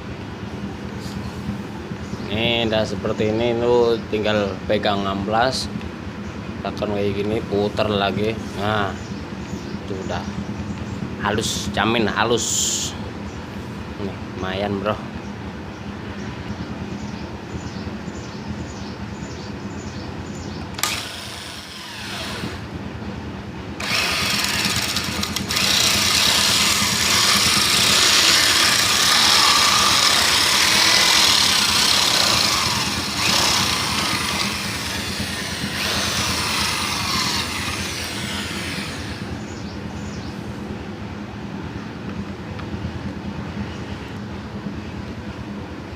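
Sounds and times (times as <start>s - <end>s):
electric drill running: 20.8s - 22.7s, 23.8s - 39.4s
wood rasping: 23.8s - 39.4s.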